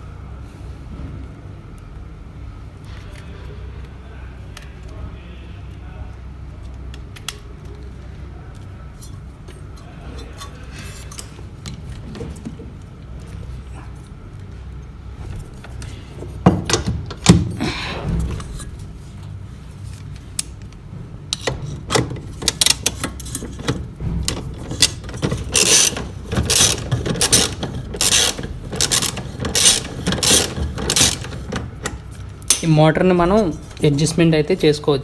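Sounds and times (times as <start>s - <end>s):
tools and metal parts clicking: 9.0s - 12.6s, 19.9s - 34.2s.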